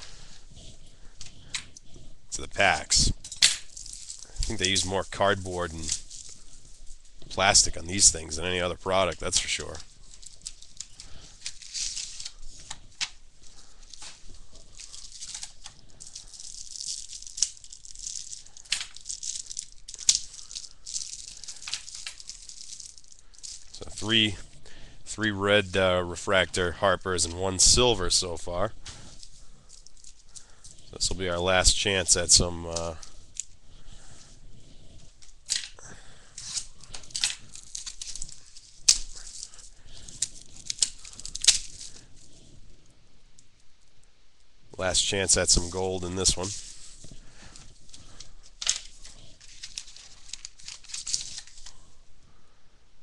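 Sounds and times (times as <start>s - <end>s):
card pack crinkling and tearing: 2.3s - 33.6s, 35.3s - 42.3s, 44.8s - 51.8s
sharp wrapper snaps: 35.2s - 42.0s, 47.9s - 51.8s.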